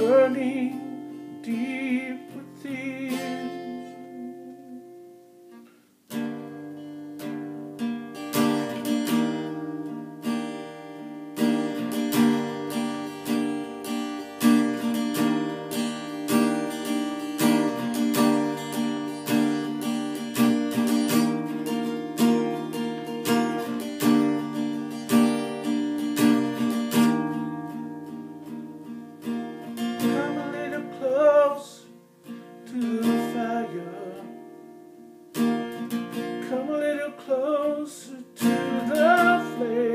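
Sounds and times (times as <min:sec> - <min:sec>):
wavering vocal line: 0:00.0 - 0:05.0, 0:36.5 - 0:39.9
acoustic guitar strumming: 0:00.0 - 0:39.9.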